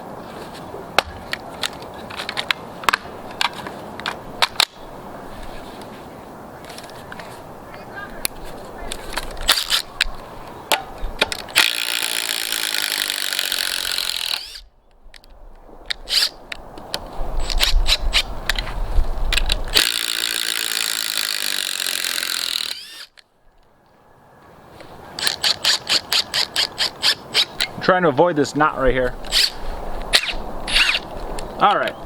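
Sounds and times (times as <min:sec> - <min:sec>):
impact drivers hammering screws: 0:11.2 - 0:14.6, 0:19.7 - 0:23.2
motors winding down: 0:11.6 - 0:14.6, 0:19.7 - 0:23.1.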